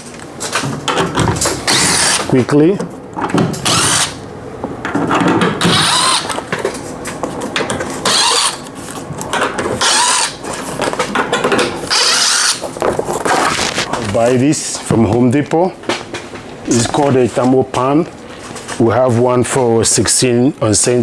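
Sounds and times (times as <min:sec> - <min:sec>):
cordless drill whirring: 0:01.7 - 0:02.3, 0:03.6 - 0:04.2, 0:05.6 - 0:06.4, 0:08.0 - 0:08.6, 0:09.8 - 0:10.4, 0:11.9 - 0:12.6.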